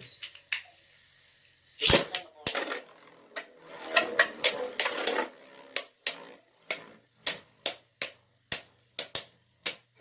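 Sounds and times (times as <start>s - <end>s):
plastic spinning tops clicking: 2.4s - 7.6s.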